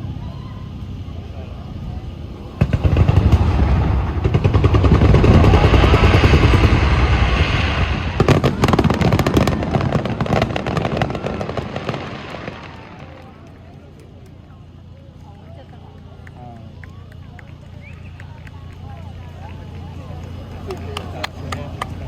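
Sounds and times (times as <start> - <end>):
dense rapid firework crackling: 0.1 - 22.0
deep rolling firework booms: 2.0 - 13.8.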